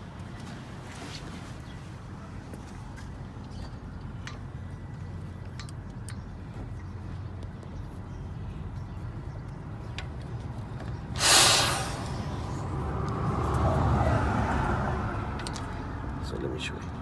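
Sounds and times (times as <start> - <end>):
air brakes hissing: 11.1 - 12.9
low vehicle rumble: 11.1 - 16.2.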